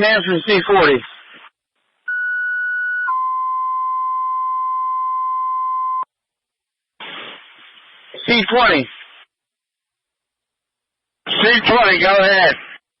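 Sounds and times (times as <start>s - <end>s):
radio static: 0.0s - 1.6s, 7.0s - 9.3s, 11.3s - 12.9s
two-tone radio paging tones: 2.1s - 6.1s.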